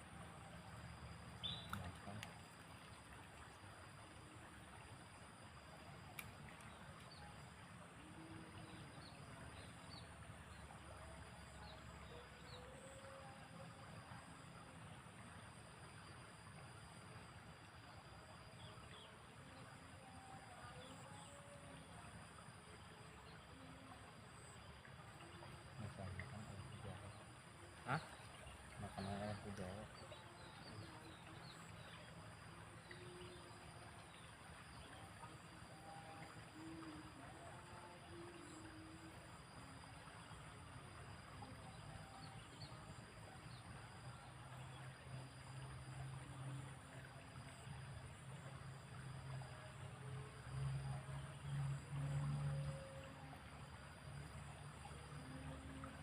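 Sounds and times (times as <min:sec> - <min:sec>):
faint outdoor background hiss: 0:00.0 - 0:56.0
high insect drone: 0:00.0 - 0:56.0
faint bird chirps: 0:01.4 - 0:02.4.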